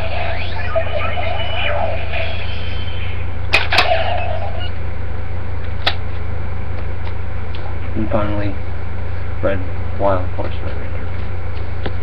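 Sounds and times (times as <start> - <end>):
wavering synthesized tones: 0.0 - 4.8
low electrical hum: 0.0 - 12.0.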